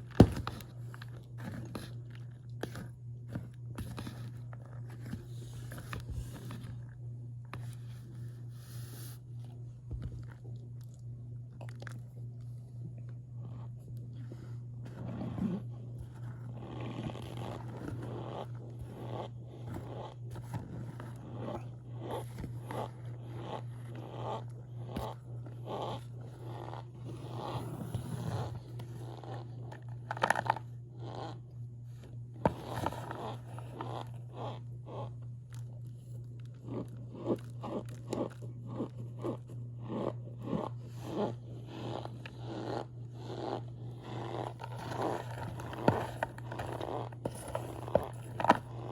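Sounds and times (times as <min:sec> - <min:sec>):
squeaky chewing crunches: 0:29.0 - 0:31.4, 0:36.4 - 0:47.2.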